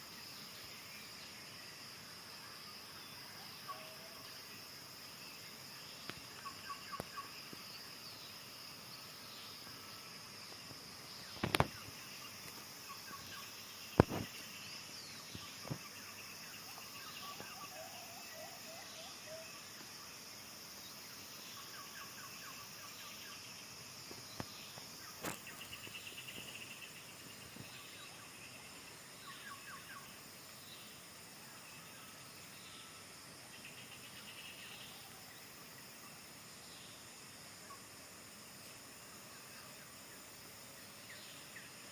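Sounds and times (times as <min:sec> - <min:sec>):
small birds chirping: 0:05.1 - 0:35.5.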